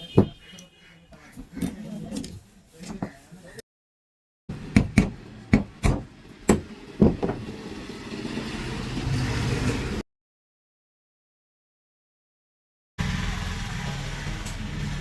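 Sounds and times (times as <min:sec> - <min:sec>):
sharp metallic knocks: 0:04.5 - 0:07.6.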